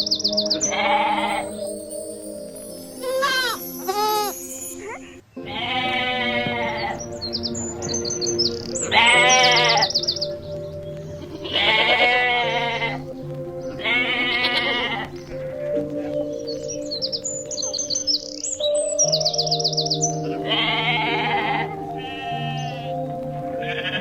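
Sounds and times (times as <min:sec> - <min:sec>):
soft background music: 0:00.0 - 0:24.0
goat bleating: 0:05.4 - 0:07.0, 0:08.9 - 0:09.9, 0:11.4 - 0:13.0, 0:13.8 - 0:15.1, 0:20.4 - 0:22.9.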